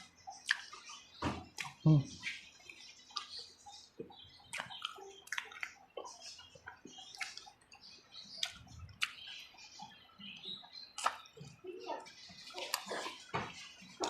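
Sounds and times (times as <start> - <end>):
wet chewing and lip smacking: 0.0 - 14.0.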